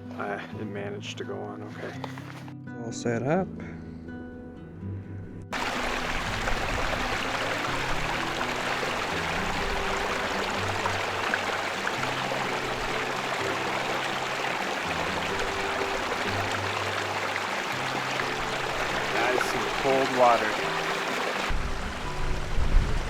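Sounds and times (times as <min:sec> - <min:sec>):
background music: 0:00.0 - 0:23.0
mountain stream rushing: 0:05.6 - 0:23.0.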